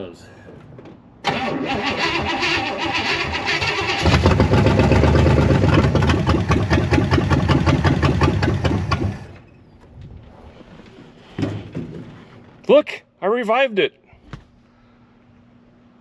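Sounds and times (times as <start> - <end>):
starter motor cranking: 1.2 - 9.4
engine running loud and rough: 2.7 - 9.4.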